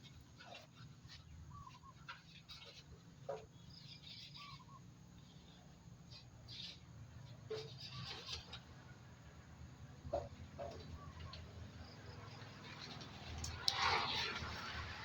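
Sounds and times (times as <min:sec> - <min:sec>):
faint bird chirps: 0:00.0 - 0:09.0, 0:10.0 - 0:12.6.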